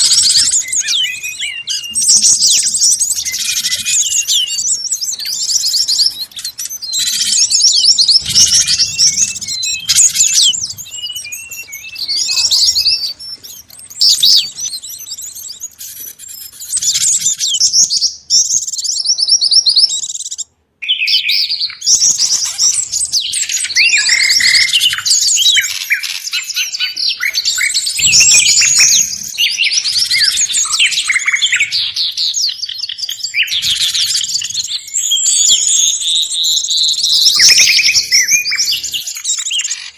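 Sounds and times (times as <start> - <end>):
songbirds chirping and twittering: 0.0 - 39.9.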